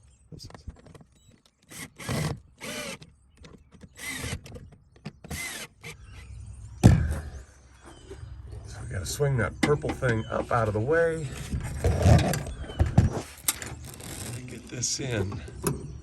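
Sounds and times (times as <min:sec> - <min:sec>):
cordless drill driving screws: 0:01.6 - 0:06.2, 0:13.4 - 0:14.5.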